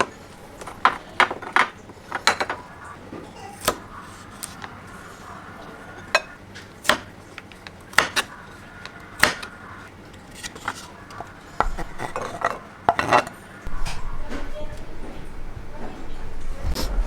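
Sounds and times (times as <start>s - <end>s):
utensils and dishes clinking: 0.0s - 4.4s, 5.6s - 7.0s, 10.1s - 16.8s.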